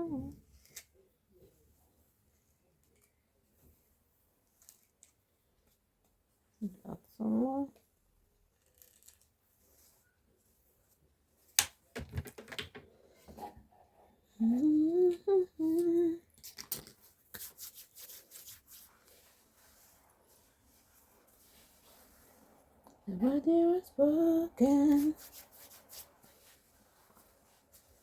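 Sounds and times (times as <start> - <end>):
woman humming a melody: 0.0 - 0.4, 14.3 - 16.2.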